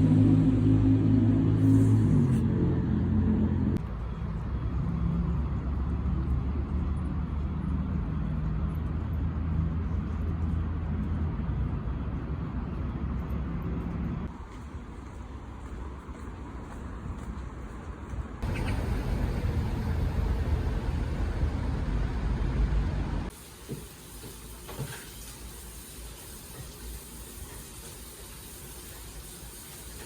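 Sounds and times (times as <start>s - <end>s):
car engine and road noise: 0.0s - 23.3s.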